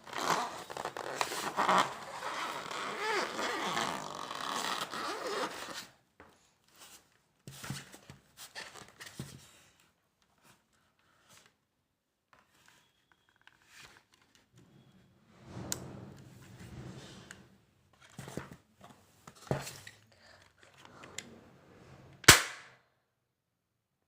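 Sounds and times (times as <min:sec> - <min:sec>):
loud sharp gunshot: 0:22.3 - 0:22.6.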